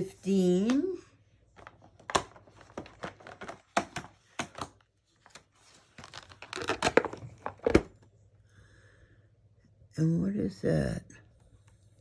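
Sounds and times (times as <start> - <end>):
cardboard and wrapping crinkling: 1.5 - 8.0.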